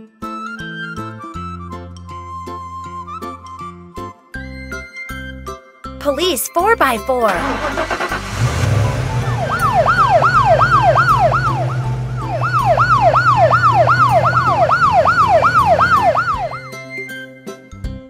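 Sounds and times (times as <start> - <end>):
police siren yelping: 7.3 - 16.7
low engine hum: 7.4 - 16.6.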